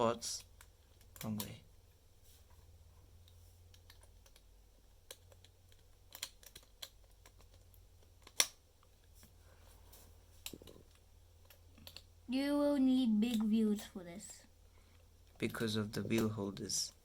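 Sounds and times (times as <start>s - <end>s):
plastic parts clicking: 3.7s - 8.6s.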